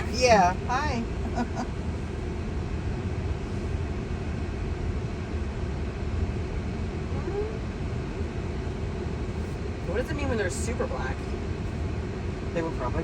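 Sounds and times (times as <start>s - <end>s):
road and cabin noise in car: 0.0s - 13.0s.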